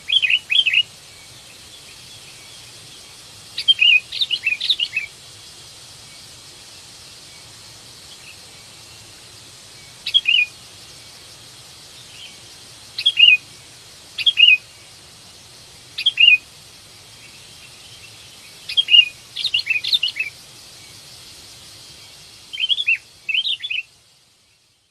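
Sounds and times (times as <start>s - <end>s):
bird calling with falling whistles: 0.0s - 0.9s, 3.5s - 5.2s, 9.9s - 10.6s, 12.0s - 13.5s, 14.2s - 14.7s, 16.0s - 16.5s, 17.3s - 20.4s, 22.4s - 23.9s
faint steady hiss: 0.0s - 24.9s.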